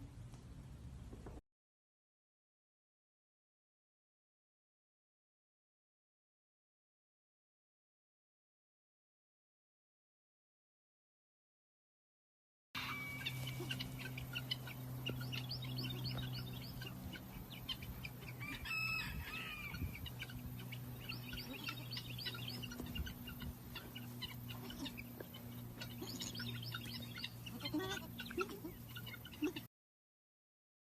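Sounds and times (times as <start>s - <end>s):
chicken call: 12.8s - 16.9s, 17.6s - 20.4s
chickens chirping and peeping: 12.8s - 29.7s
steady low hum: 12.8s - 29.7s.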